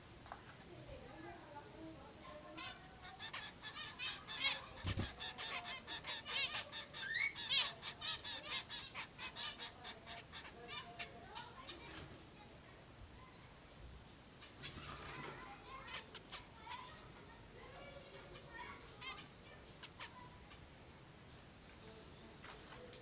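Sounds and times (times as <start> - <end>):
chicks begging calls: 2.4 - 11.9, 15.7 - 20.8.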